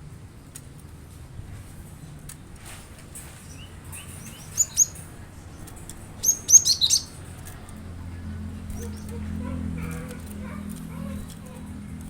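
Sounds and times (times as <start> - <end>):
bird chirping: 3.4 - 11.7.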